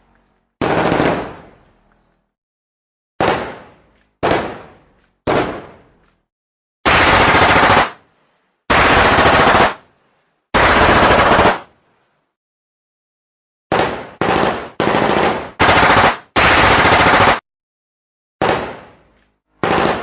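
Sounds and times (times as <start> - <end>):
machine-gun bursts: 0.6 - 1.3, 6.9 - 8.0, 8.7 - 9.8, 10.6 - 11.7, 13.7 - 17.4, 19.6 - 20.0.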